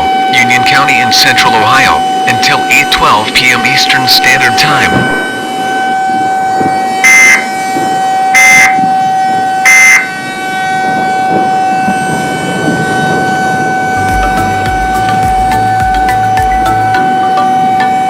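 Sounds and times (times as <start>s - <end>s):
steady droning tone: 13.7s - 18.0s
low music: 13.8s - 18.0s.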